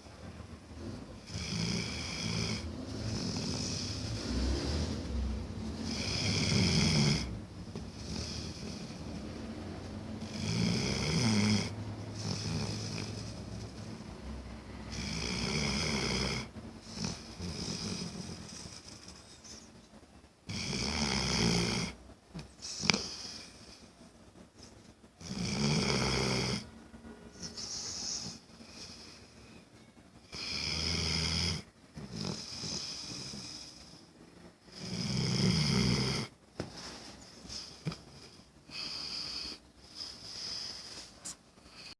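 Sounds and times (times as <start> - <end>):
person snoring: 1.2 - 9.0, 10.2 - 13.6, 14.9 - 18.8, 20.5 - 22.0, 25.2 - 26.7, 34.7 - 36.3.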